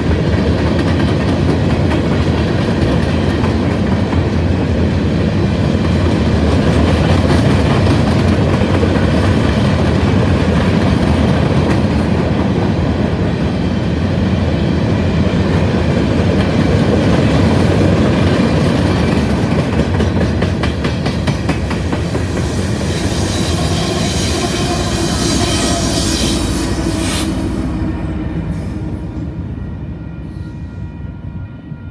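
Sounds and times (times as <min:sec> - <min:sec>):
freight cars rumbling past: 0:17.3 - 0:30.0
high wheel squeal: 0:21.7 - 0:29.4.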